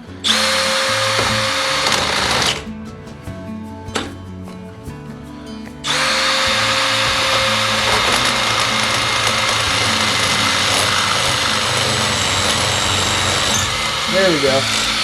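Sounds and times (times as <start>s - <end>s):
power drill whining: 0.0s - 2.7s, 5.8s - 15.0s
drill cutting noise: 0.2s - 2.7s, 5.8s - 15.0s.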